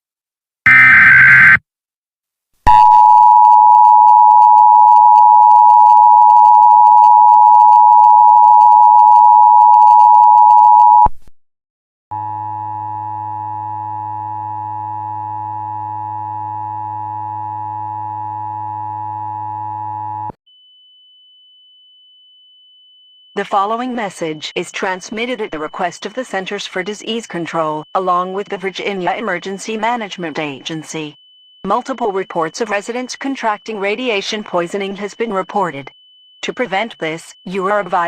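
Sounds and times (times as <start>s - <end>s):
harsh digital data burst: 0.7s - 1.6s
loud two-tone attention signal: 0.7s - 1.6s.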